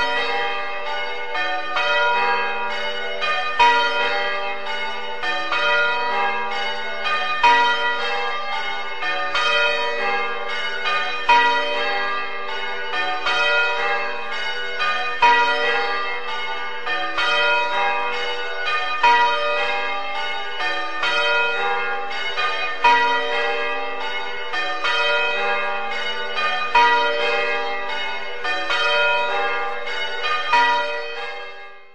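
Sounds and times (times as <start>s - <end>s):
church bells ringing: 0.0s - 31.9s.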